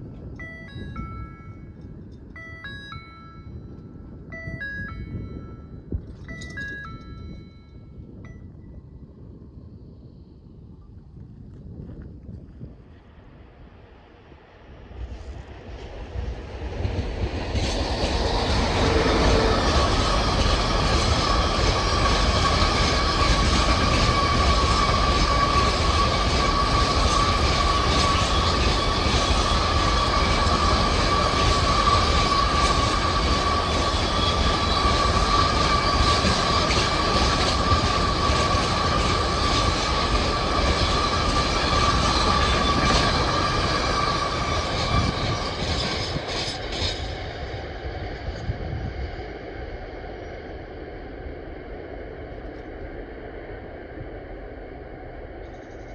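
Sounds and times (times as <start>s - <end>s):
train wheels rumbling over rails: 12.8s - 55.9s.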